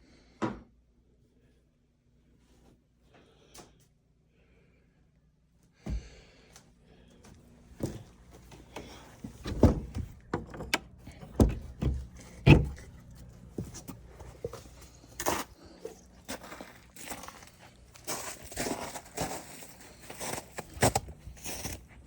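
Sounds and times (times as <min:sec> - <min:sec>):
heavy footsteps: 0:05.8 - 0:06.3
wooden door being handled: 0:07.8 - 0:13.7
knocking thumps: 0:08.7 - 0:14.6.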